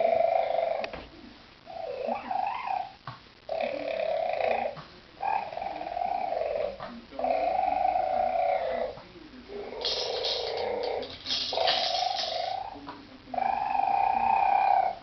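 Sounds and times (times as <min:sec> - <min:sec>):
pet making drawn-out calls: 0:09.6 - 0:15.0.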